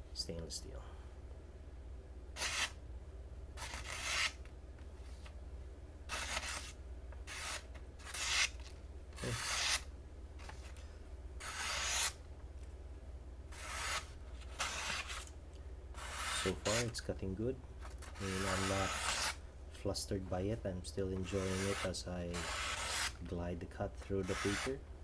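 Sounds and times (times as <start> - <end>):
knife slicing paper: 2.4 - 2.8, 3.6 - 4.4, 6.1 - 10.7, 11.4 - 12.2, 13.5 - 15.3, 16.0 - 17.0, 18.0 - 19.4, 21.2 - 23.2, 24.2 - 24.8.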